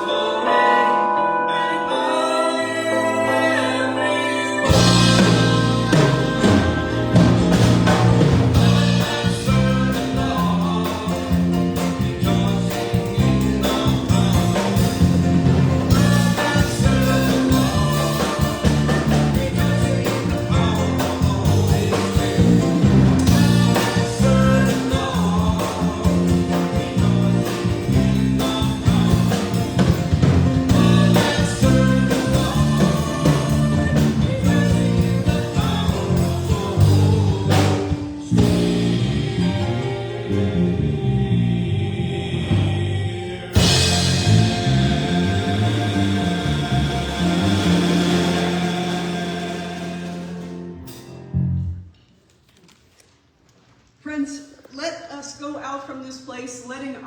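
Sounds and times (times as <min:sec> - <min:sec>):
congregation singing a hymn: 0:00.0 - 0:51.1
drums: 0:04.6 - 0:40.9, 0:41.6 - 0:51.3
guitar: 0:04.6 - 0:41.3.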